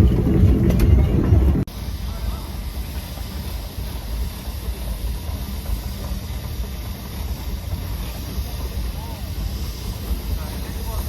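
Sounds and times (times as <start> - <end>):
steam engine rumbling and hissing: 0.0 - 11.0.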